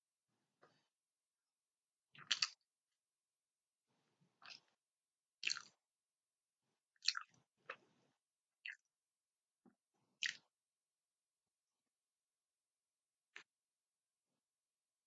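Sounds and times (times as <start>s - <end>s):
person chewing and biting food: 5.4s - 5.7s.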